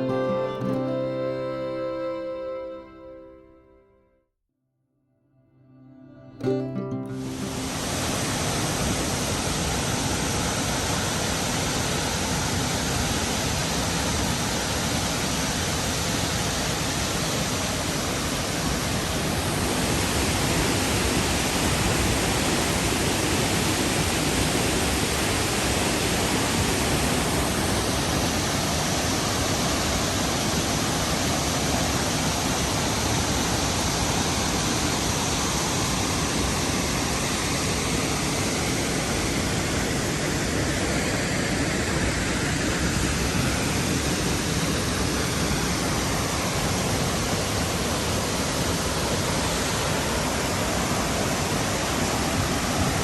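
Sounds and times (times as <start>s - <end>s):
waterfall rushing: 6.6s - 53.0s.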